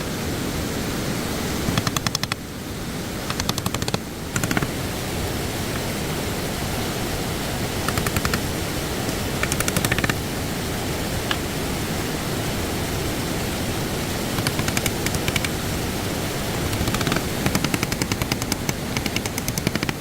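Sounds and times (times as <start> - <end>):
stream water rushing: 0.0 - 20.0
rapid clicking: 1.7 - 2.5, 3.2 - 4.9, 7.8 - 10.3, 14.3 - 15.8, 16.6 - 20.0.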